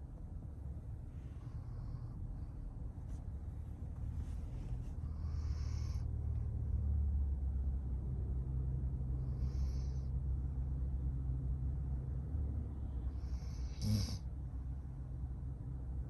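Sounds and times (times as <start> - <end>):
low steady rumble: 0.0 - 16.0
dog breathing deeply: 4.1 - 6.3.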